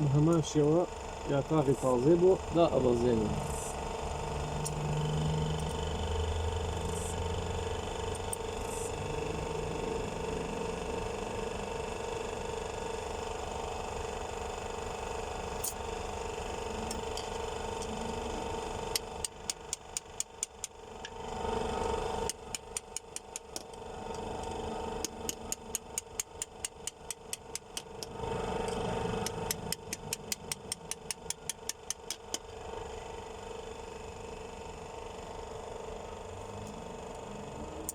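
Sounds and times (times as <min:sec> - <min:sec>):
steady mechanical hum: 0:00.0 - 0:37.9
ratchet wrench clicking: 0:18.9 - 0:21.2, 0:22.2 - 0:23.8, 0:24.4 - 0:32.4.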